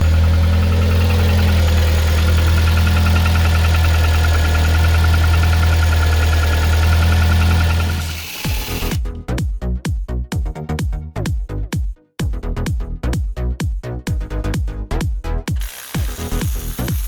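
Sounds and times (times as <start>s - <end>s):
car engine idling with knock: 0.0s - 9.0s.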